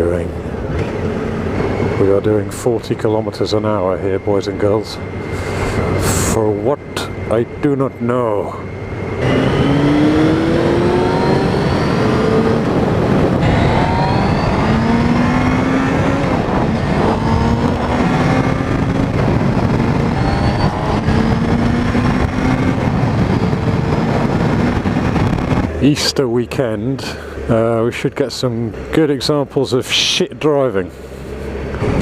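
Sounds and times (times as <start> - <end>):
steady rush of noise: 0.1 - 28.6
motorcycle engine accelerating: 8.8 - 27.8.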